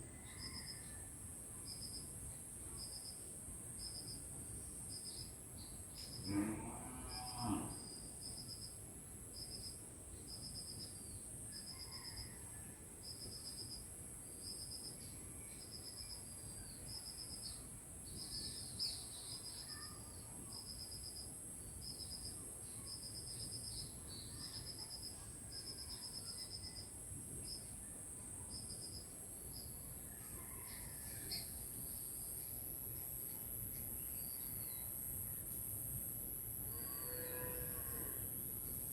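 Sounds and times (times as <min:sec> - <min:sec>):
insects trilling and chirping: 0:00.0 - 0:38.9
low animal call: 0:06.3 - 0:07.8.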